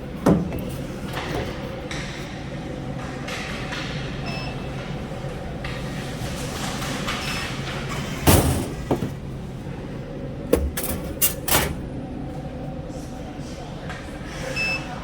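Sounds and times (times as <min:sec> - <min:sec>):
vending machine hum: 0:00.0 - 0:15.0
vending machine heavy clunk: 0:07.0 - 0:09.3, 0:10.4 - 0:12.0.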